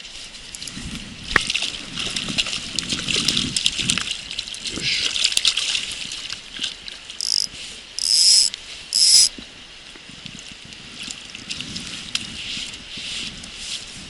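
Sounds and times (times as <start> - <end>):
fishing reel drag buzzing: 7.2 - 9.3.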